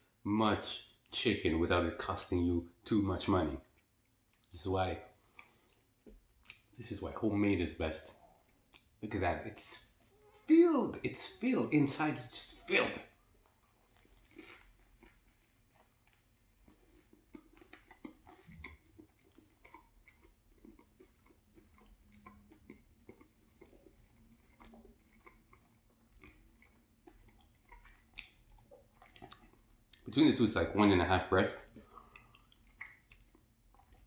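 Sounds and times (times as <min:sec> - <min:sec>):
chewing mouth clicks: 0:03.7 - 0:06.8, 0:08.1 - 0:09.0, 0:13.1 - 0:30.1, 0:31.6 - 0:34.0.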